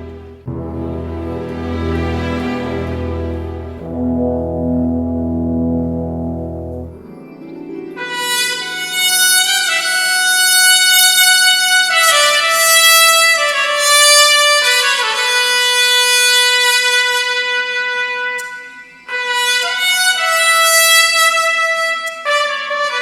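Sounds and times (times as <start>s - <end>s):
melody of held notes: 0.0s - 12.0s.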